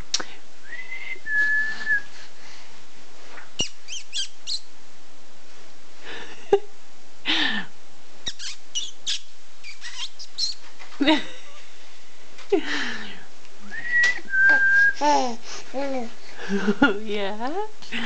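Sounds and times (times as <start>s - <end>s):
bird chirping: 3.6s - 4.7s, 8.2s - 10.6s
bird whistling: 3.6s - 4.7s, 8.3s - 10.6s.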